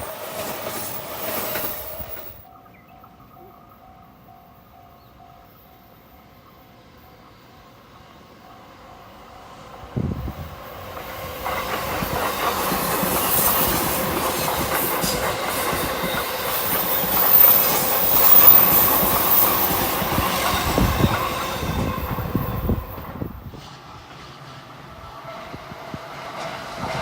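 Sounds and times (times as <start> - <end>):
train wheels clattering on rails: 0.0 - 2.5, 9.6 - 27.0
electric train passing: 0.0 - 27.0.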